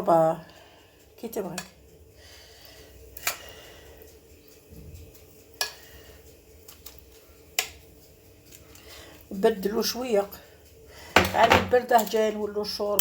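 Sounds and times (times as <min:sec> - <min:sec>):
utensils clinking against dishes: 0:11.1 - 0:12.4.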